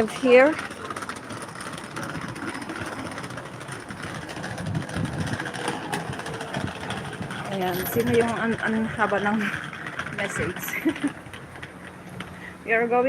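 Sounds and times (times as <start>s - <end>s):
passing vehicles rumbling: 0.0s - 13.0s.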